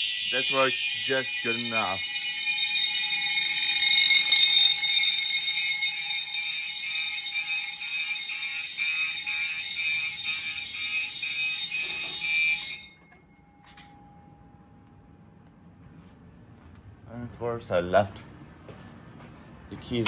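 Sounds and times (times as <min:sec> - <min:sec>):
pulsing alarm horn: 0:00.0 - 0:13.1
fire alarm tones: 0:00.0 - 0:14.5.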